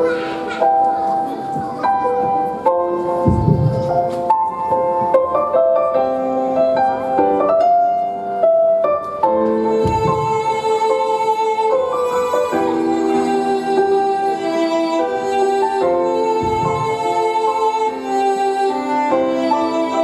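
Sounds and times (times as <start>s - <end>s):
dance music with violin and piano: 9.0s - 20.0s.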